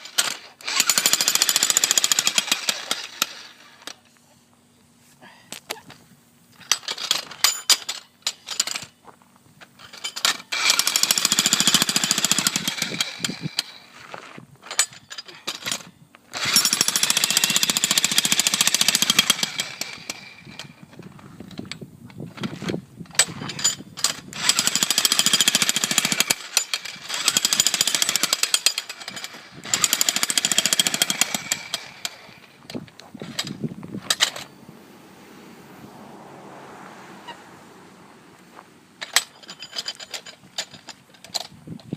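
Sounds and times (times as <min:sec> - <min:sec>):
jackhammer hammering concrete: 0:00.0 - 0:03.7, 0:10.5 - 0:13.9, 0:16.4 - 0:20.6, 0:23.3 - 0:32.6.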